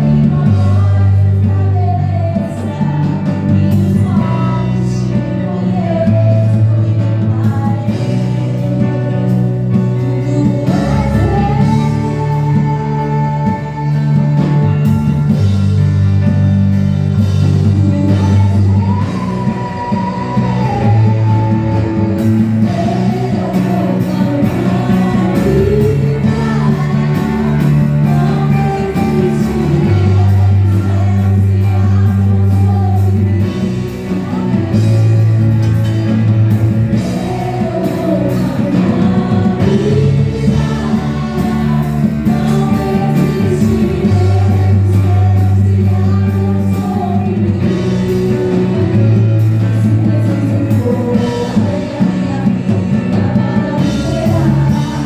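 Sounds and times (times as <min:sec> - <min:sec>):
person singing: 0:00.0 - 0:15.8, 0:17.4 - 0:55.0
worship band playing: 0:00.0 - 0:55.0.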